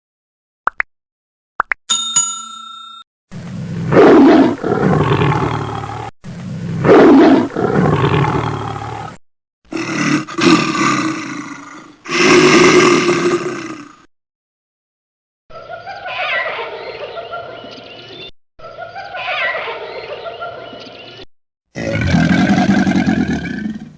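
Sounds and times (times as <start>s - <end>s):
animal roaring: 3.6s - 14.1s, 21.7s - 23.9s.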